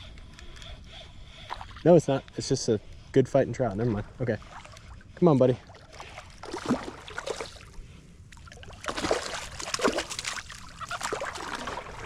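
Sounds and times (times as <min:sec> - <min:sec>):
water splashing against kayak: 0:05.7 - 0:07.7, 0:08.4 - 0:12.0.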